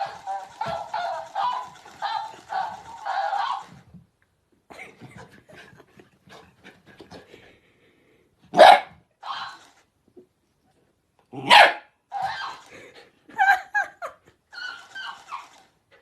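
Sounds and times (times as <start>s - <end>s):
dog barking and yipping: 0.0s - 3.9s, 8.5s - 9.7s, 11.4s - 12.7s, 14.5s - 15.6s.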